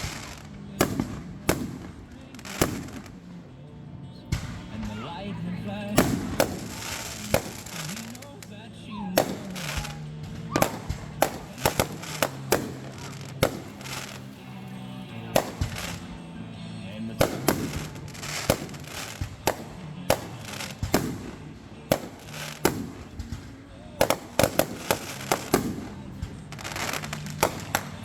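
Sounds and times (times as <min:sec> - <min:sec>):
fireworks crackling hiss: 0:00.0 - 0:03.6, 0:04.4 - 0:28.0
fireworks banging: 0:00.0 - 0:28.0
music playing: 0:00.0 - 0:28.0.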